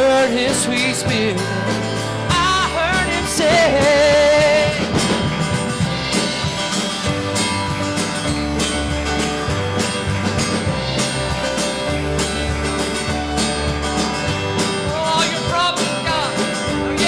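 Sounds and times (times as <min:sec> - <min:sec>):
worship band playing instrumental: 0:00.0 - 0:17.0.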